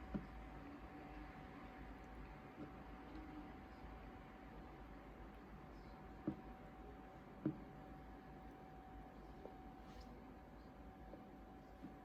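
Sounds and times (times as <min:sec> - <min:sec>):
faint steady hum: 0:00.0 - 0:12.0
soft knock: 0:06.2 - 0:06.5, 0:07.4 - 0:07.7.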